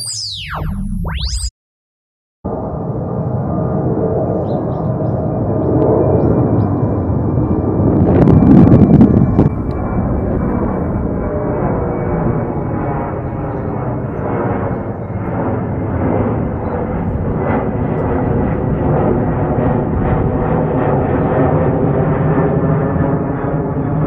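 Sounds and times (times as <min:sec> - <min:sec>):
wind rush on microphone: 0:04.4 - 0:23.3.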